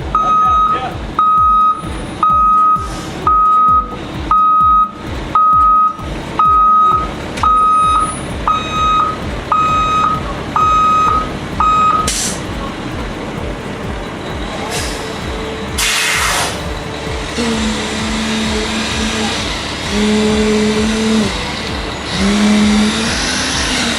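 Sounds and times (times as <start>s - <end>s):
truck reversing alarm beeping: 0.0s - 13.1s
diesel engine running: 0.0s - 23.9s
short hiss: 12.1s - 12.5s, 15.8s - 16.6s.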